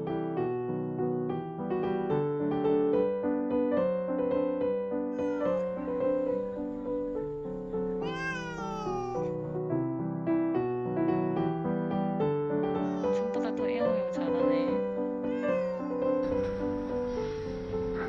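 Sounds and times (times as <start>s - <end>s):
gentle piano music: 0.0s - 18.0s
cat meowing: 5.1s - 9.6s, 12.8s - 13.4s, 14.7s - 17.0s.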